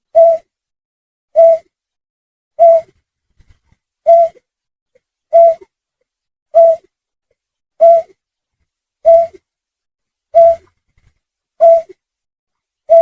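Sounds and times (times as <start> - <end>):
snipe lure call: 0.1 - 0.5, 1.3 - 1.7, 2.6 - 2.9, 4.1 - 4.4, 5.3 - 5.7, 6.5 - 6.9, 7.8 - 8.2, 9.0 - 9.4, 10.4 - 10.7, 11.6 - 12.0.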